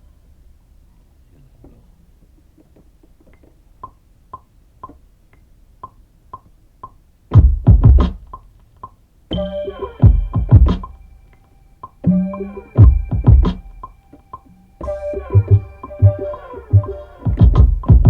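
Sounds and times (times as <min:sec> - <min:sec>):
kick drum hits: 0:07.4 - 0:08.5, 0:09.4 - 0:11.1, 0:12.1 - 0:13.9, 0:16.8 - 0:18.0
pitched percussion hits: 0:09.3 - 0:11.4, 0:12.0 - 0:18.0
held synth chord: 0:09.3 - 0:17.6.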